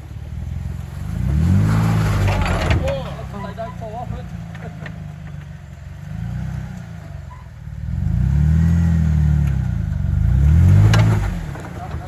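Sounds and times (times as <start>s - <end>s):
vehicle engine revving: 0.0s - 12.0s.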